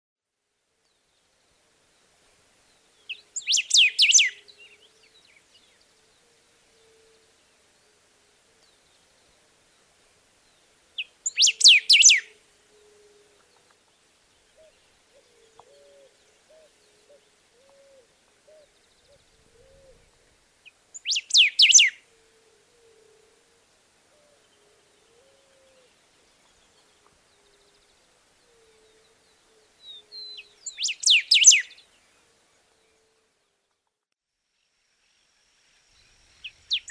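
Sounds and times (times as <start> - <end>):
bird whistling song: 3.0 - 5.8, 11.0 - 13.2, 20.9 - 23.2, 29.8 - 31.9, 36.0 - 36.9.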